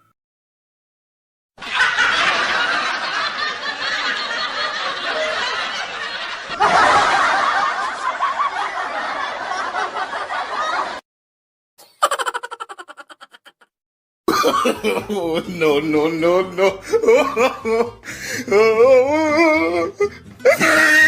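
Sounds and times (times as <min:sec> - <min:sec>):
cackling laughter: 0:01.6 - 0:11.0, 0:11.8 - 0:13.7, 0:14.3 - 0:15.4, 0:16.8 - 0:18.0, 0:18.6 - 0:21.0.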